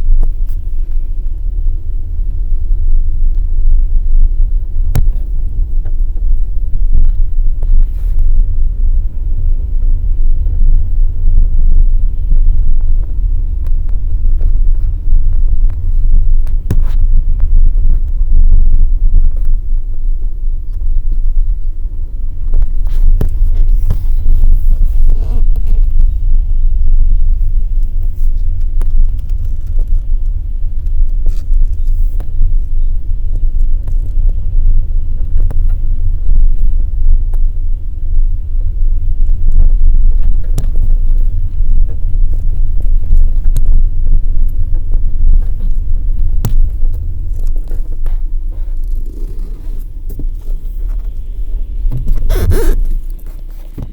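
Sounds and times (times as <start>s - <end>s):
car low rumble: 0.0s - 53.9s
car body creaks and clicks: 4.8s - 8.4s, 12.5s - 26.3s, 27.4s - 36.7s, 39.2s - 53.9s.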